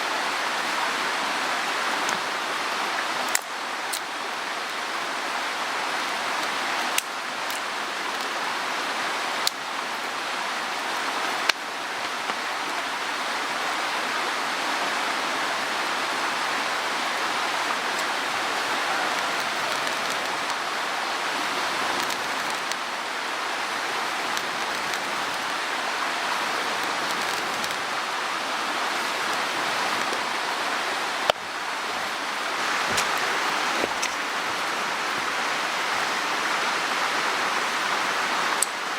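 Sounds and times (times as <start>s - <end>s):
stream rushing: 0.0s - 38.9s.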